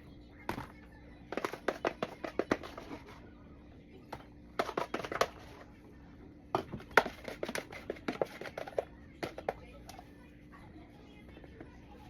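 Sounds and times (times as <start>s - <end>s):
kitchen utensils clicking and knocking: 1.3s - 3.1s, 4.5s - 5.5s.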